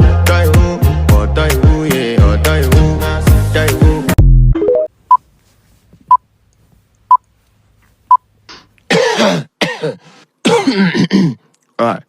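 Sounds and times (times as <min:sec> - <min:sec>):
person coughing: 0:08.9 - 0:11.5.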